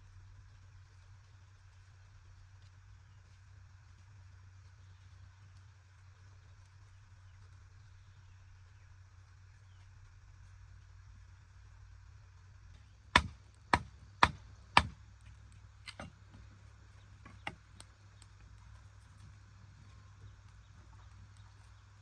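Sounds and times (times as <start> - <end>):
loud sharp knocks: 13.2 - 15.0.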